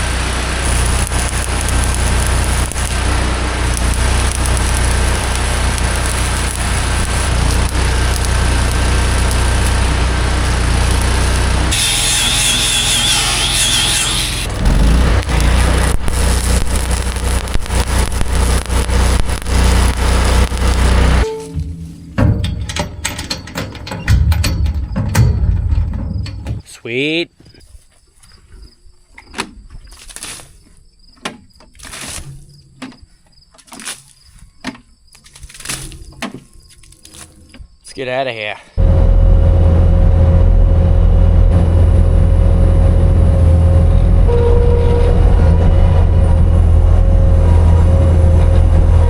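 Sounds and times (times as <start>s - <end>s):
low hum: 0.0s - 13.6s, 14.2s - 26.6s, 38.8s - 49.0s
welding arc crackling: 0.0s - 21.3s
scraping and scuffing: 21.2s - 22.5s, 31.6s - 37.5s
sharp knocks: 21.5s - 26.6s.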